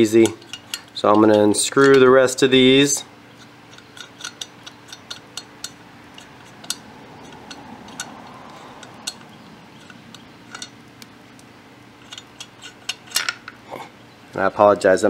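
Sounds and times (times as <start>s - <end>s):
light metallic clicks: 3.4s - 13.6s.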